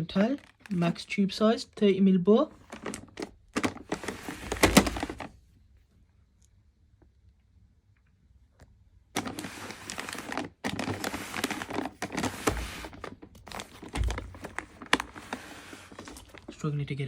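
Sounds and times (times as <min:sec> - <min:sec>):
plastic wrapping crinkling: 0:00.0 - 0:01.1, 0:02.6 - 0:05.3, 0:09.2 - 0:16.7.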